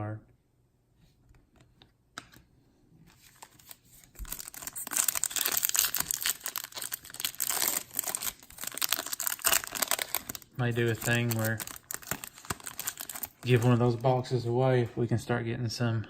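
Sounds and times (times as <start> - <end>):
foil wrapper tearing and crackling: 3.3 - 13.9.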